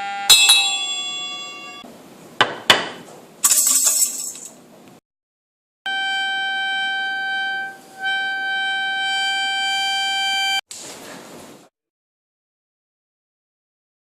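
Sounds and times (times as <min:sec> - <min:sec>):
high single-pitched tone: 0:00.0 - 0:01.8, 0:05.9 - 0:10.6.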